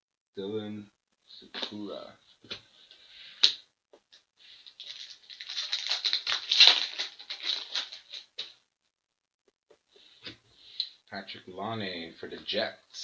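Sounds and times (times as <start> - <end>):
card wrapper crinkling and rustling: 4.6 - 8.6.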